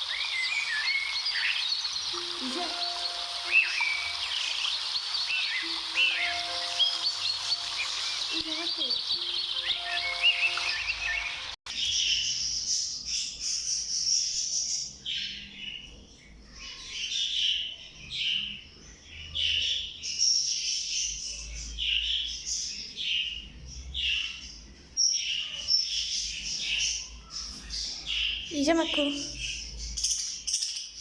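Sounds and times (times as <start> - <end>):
budgerigars chattering and warbling: 0.0 - 15.6.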